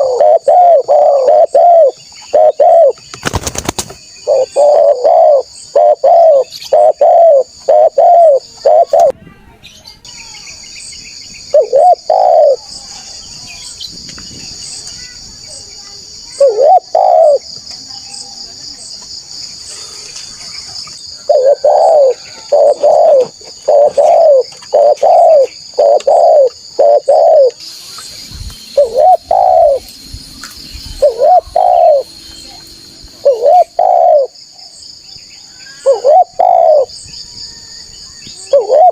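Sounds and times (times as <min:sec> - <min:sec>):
dove cooing: 0:00.0 - 0:03.0, 0:04.2 - 0:09.1, 0:11.5 - 0:12.6, 0:16.4 - 0:17.4, 0:21.1 - 0:27.6, 0:28.8 - 0:29.9, 0:31.0 - 0:32.1, 0:33.2 - 0:34.4, 0:35.8 - 0:37.0, 0:38.4 - 0:38.9
high insect drone: 0:00.0 - 0:09.1, 0:10.1 - 0:38.9.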